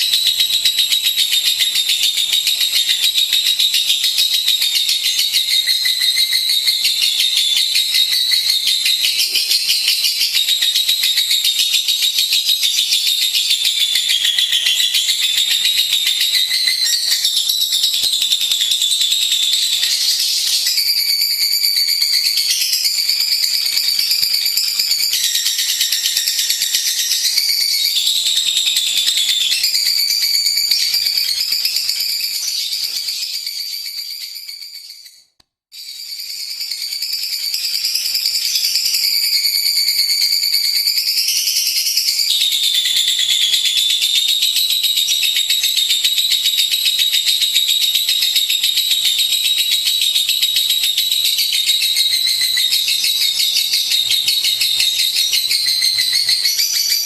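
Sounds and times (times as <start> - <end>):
lovebird chattering trill: 0.0 - 35.0, 50.2 - 57.0.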